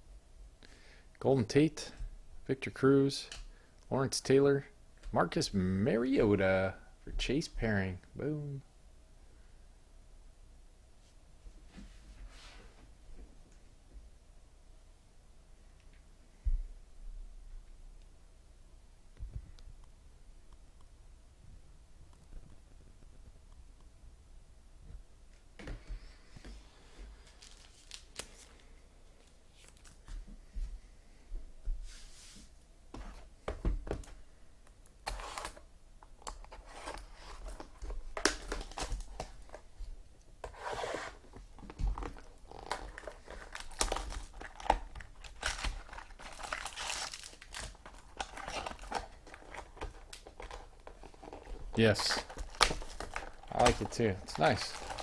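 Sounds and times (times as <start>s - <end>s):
cards rustling: 27.1s - 30.1s, 35.1s - 35.6s, 40.4s - 55.0s
card wrappers tearing and crinkling: 27.2s - 28.6s, 35.1s - 35.6s, 36.3s - 39.6s, 40.5s - 55.0s.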